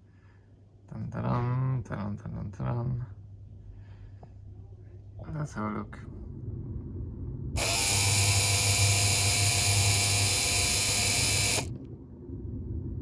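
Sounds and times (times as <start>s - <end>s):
low hum: 3.1s - 13.0s
electric pump motor whining: 7.6s - 11.7s.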